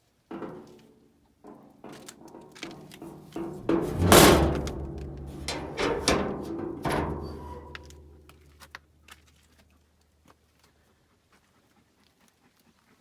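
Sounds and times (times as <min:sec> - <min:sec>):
water containers knocking and thudding: 0:01.5 - 0:08.4.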